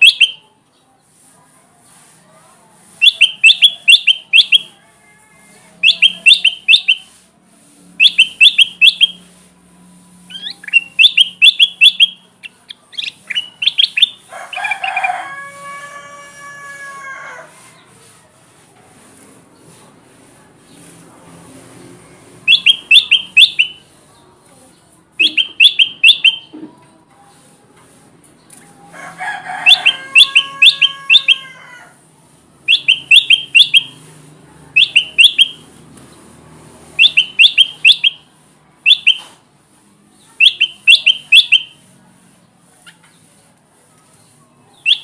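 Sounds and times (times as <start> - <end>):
bulbul singing: 0.0 - 0.5, 3.0 - 4.7, 5.8 - 7.1, 8.0 - 9.2, 10.3 - 15.0, 22.5 - 23.9, 25.2 - 26.6, 29.6 - 31.4, 32.6 - 34.0, 34.8 - 35.7, 37.0 - 38.2, 38.8 - 39.4, 40.4 - 41.8, 44.8 - 45.0.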